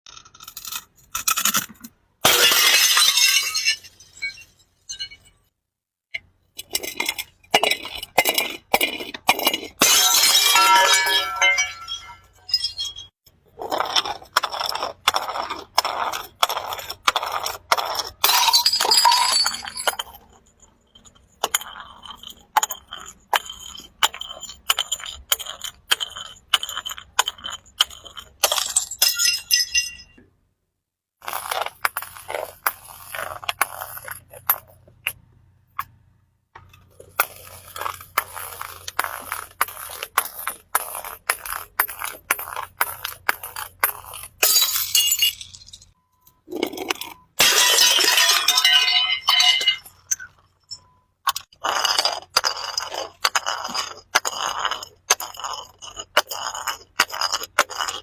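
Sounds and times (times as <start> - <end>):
glass bottles being crushed: 0.2 - 5.5, 6.6 - 13.1, 17.8 - 30.2, 36.6 - 58.0
glass shards clinking: 9.8 - 13.1, 28.6 - 30.2, 44.4 - 51.0.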